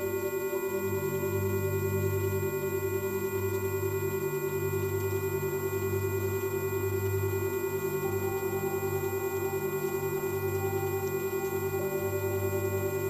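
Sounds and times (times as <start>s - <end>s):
layered electronic sine tones: 0.0s - 13.0s
faint extra tone: 8.0s - 13.0s.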